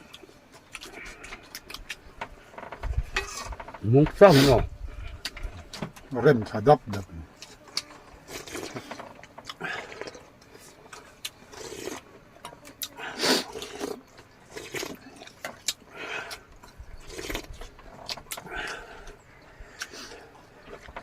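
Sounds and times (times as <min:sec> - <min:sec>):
chewing and mouth smacks: 0:07.4 - 0:21.0.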